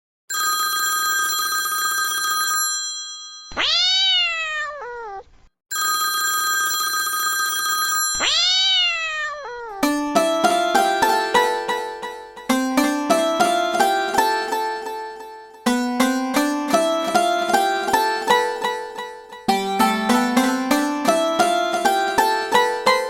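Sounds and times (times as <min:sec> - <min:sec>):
electronic phone ring: 0:00.3 - 0:04.0, 0:05.7 - 0:08.6
cat meowing: 0:03.6 - 0:05.4, 0:08.2 - 0:10.0
plucked-string melody: 0:09.8 - 0:23.0.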